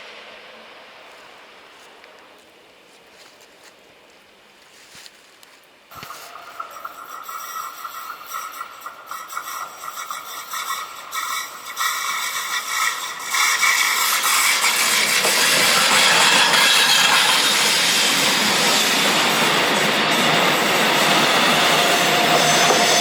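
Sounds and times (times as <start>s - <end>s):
train rushing past: 5.9s - 23.0s
train wheels squealing: 6.1s - 23.0s.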